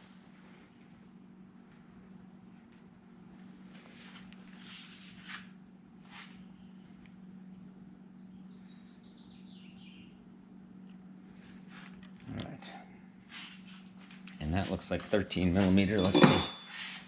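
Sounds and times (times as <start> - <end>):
steady low hum: 0.0 - 17.0
metal parts clinking: 16.0 - 16.7.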